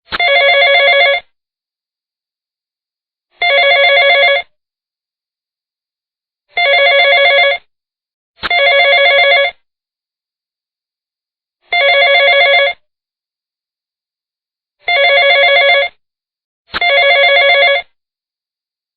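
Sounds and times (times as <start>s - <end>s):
warbling electronic phone ring: 0.1s - 1.2s, 3.4s - 4.5s, 6.6s - 7.7s, 8.4s - 9.6s, 11.7s - 12.8s, 14.9s - 16.0s, 16.8s - 17.9s.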